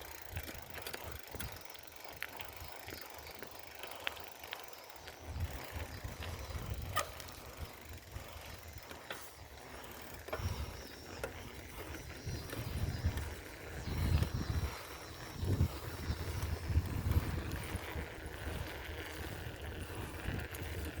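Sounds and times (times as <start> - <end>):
bicycle clicks and rattles: 0.0 - 21.0
wind rumbling on microphone: 5.0 - 21.0.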